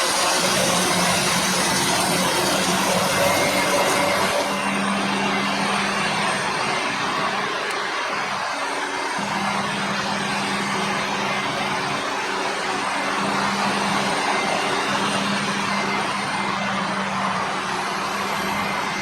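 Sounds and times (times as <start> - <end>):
engine drone: 0.0 - 19.0.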